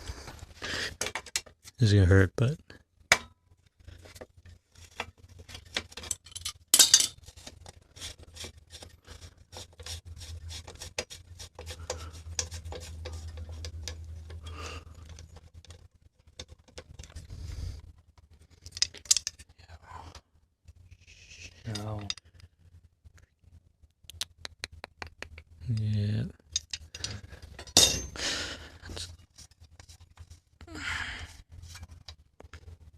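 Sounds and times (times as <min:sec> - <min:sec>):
sharp metal clank: 0:27.6 - 0:28.2.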